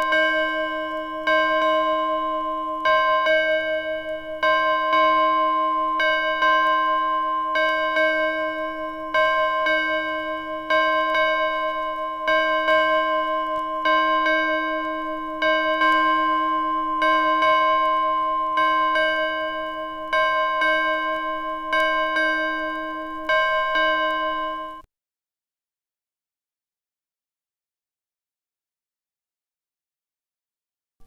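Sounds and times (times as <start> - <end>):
bell tolling: 0.0 - 24.8.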